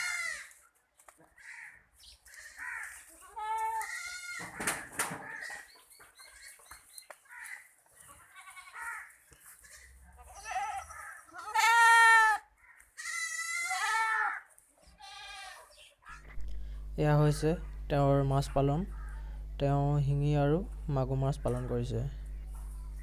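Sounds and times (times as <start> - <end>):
goats bleating: 0.0 - 0.6, 2.3 - 4.5, 7.3 - 15.8.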